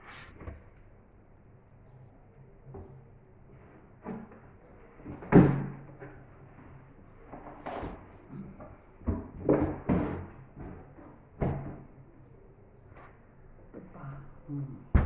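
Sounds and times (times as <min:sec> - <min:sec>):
books knocking and thumping: 0:09.0 - 0:10.8.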